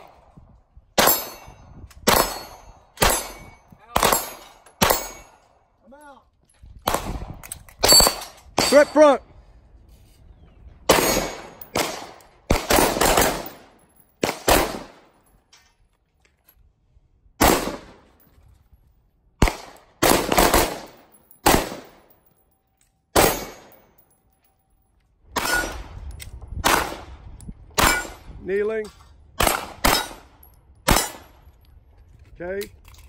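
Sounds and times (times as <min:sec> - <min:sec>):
pistol shots: 0:02.0 - 0:05.3, 0:10.9 - 0:15.1, 0:17.4 - 0:18.0, 0:19.4 - 0:22.1, 0:23.1 - 0:23.8, 0:26.6 - 0:27.1, 0:27.8 - 0:28.2, 0:29.4 - 0:31.3.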